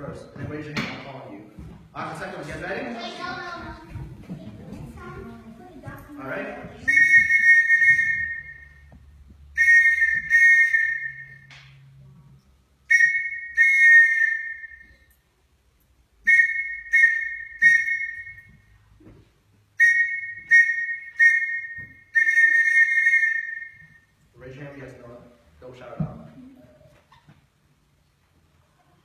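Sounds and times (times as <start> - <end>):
whistle blasts: 6.8 - 8.9, 9.5 - 11.5, 12.8 - 15.1, 16.2 - 18.7, 19.8 - 24.1.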